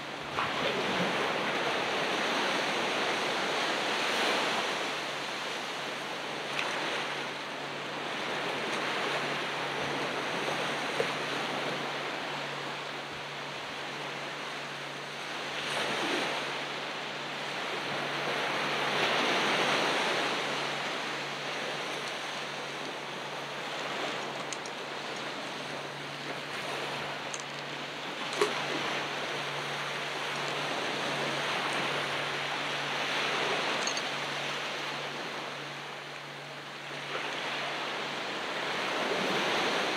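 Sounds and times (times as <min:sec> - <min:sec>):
steady surf hiss: 0:00.0 - 0:39.9
waves breaking on shore: 0:00.0 - 0:39.9.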